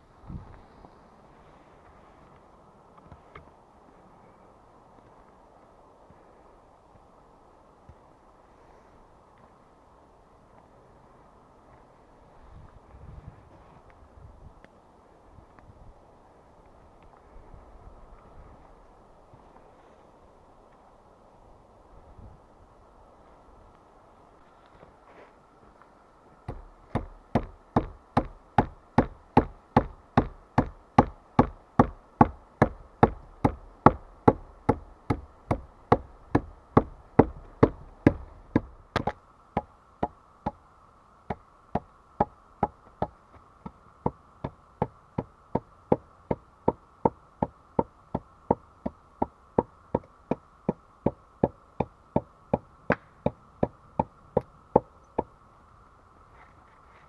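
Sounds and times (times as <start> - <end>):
hand tool striking wood: 26.5 - 40.6.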